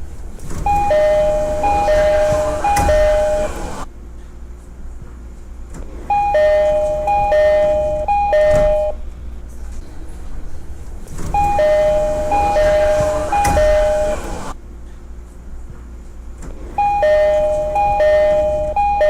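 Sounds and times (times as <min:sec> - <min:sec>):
low train rumble: 0:00.0 - 0:19.0
door thump: 0:00.4 - 0:03.8, 0:08.3 - 0:09.0, 0:11.1 - 0:14.5
two-note train door chime: 0:00.6 - 0:03.9, 0:06.2 - 0:09.0, 0:11.3 - 0:14.6, 0:16.8 - 0:19.0.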